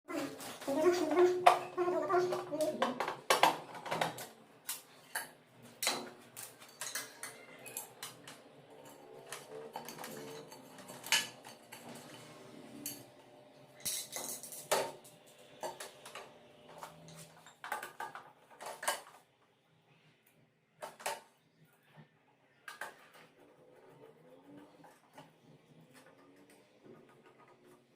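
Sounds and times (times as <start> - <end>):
hard objects clinking and knocking: 0.5 - 13.1, 13.8 - 19.1.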